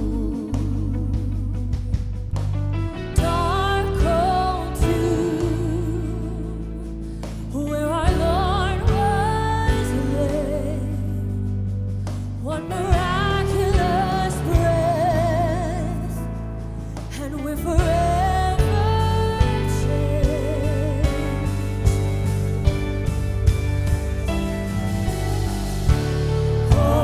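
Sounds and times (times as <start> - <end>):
person singing with vibrato: 3.2 - 11.5, 12.4 - 16.4, 17.1 - 22.8, 25.5 - 27.0
sustained accompaniment: 20.5 - 27.0.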